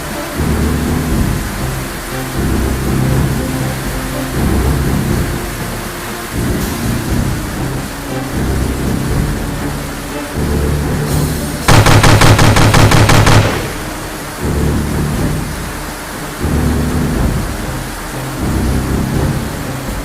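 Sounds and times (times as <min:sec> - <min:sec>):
machine-gun burst: 0:11.7 - 0:14.2.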